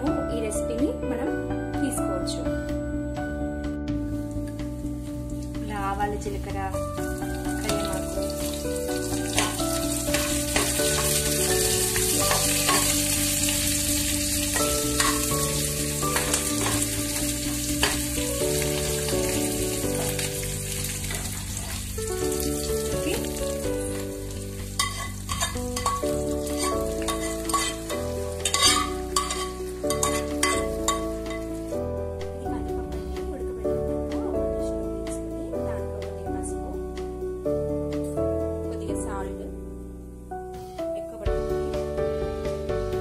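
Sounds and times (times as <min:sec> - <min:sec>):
slow melodic background music: 0:00.0 - 0:43.0
seeds sizzling in hot oil: 0:07.0 - 0:31.9.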